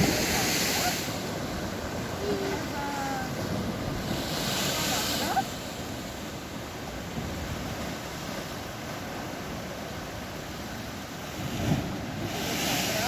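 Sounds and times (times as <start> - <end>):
wind on microphone: 0.0 - 5.3
surf breaking on shore: 0.0 - 13.0.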